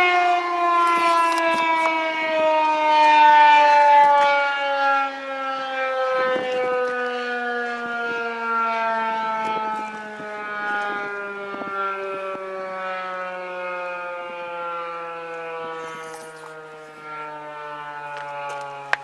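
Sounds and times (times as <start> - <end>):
warning siren winding down: 0.0 - 19.0.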